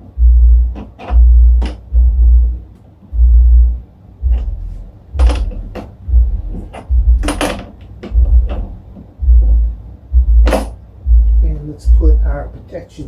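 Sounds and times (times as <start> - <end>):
deep bass thud: 0.0 - 12.5
metal tools clicking and knocking: 6.7 - 8.2.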